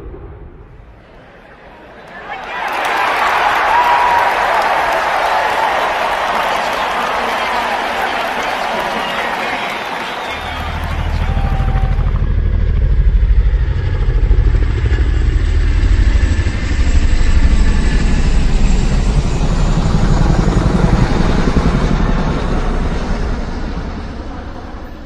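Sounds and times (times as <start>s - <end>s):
vehicle engine pulsing: 10.4s - 16.7s.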